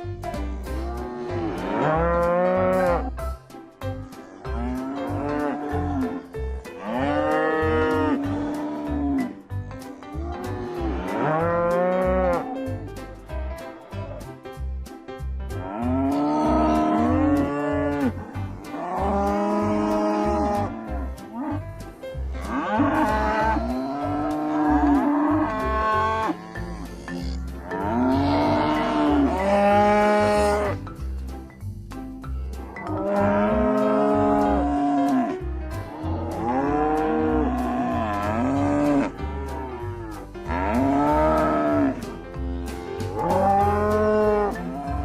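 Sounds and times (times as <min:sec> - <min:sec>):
background music with low beat: 0:00.0 - 0:45.0
cattle mooing: 0:00.8 - 0:03.1, 0:06.8 - 0:09.3, 0:10.4 - 0:12.4, 0:18.8 - 0:20.8, 0:22.4 - 0:30.8, 0:36.4 - 0:42.0, 0:43.1 - 0:45.0.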